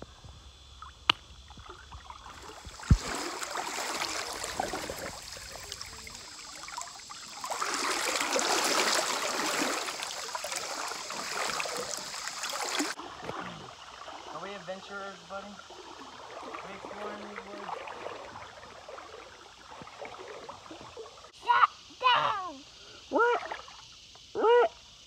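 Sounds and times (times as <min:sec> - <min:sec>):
river water rushing and splashing: 0:02.0 - 0:21.4
low thump: 0:02.6 - 0:03.5.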